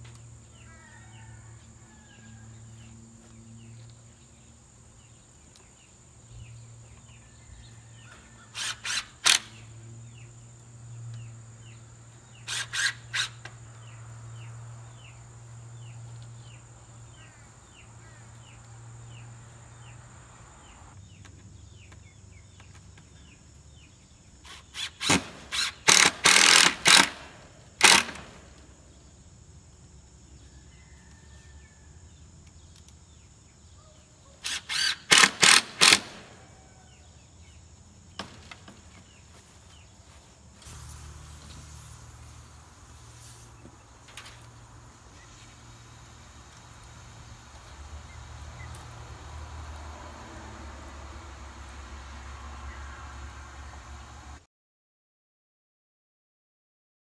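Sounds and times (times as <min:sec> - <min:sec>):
sharp clicks: 0:08.6 - 0:09.6, 0:24.9 - 0:28.7, 0:34.4 - 0:36.3.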